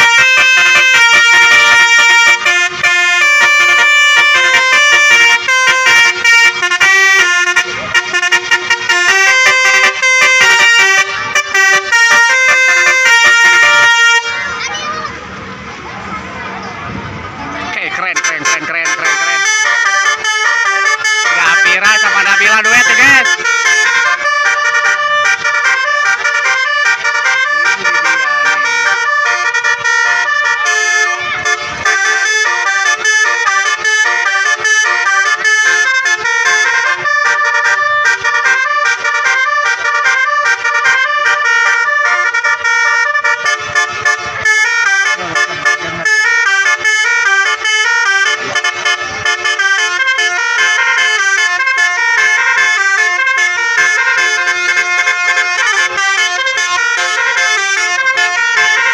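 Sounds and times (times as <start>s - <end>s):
multi-tone bus horns playing tunes: 0.0s - 15.6s, 17.6s - 58.9s.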